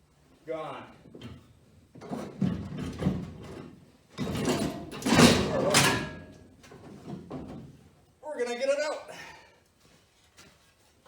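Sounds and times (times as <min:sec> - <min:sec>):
objects knocking and clunking: 0:01.0 - 0:08.0.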